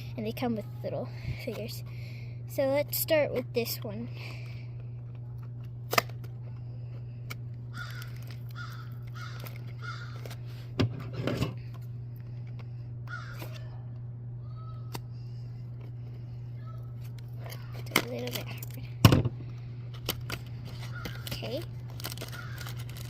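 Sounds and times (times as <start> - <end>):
steady low hum: 0.0 - 23.0
packaging clicks and crinkling: 7.3 - 10.5, 19.9 - 23.0.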